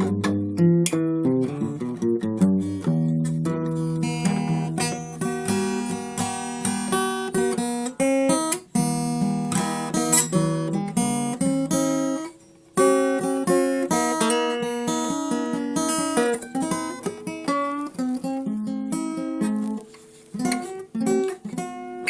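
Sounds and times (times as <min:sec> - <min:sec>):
acoustic guitar playing: 0:00.0 - 0:22.0.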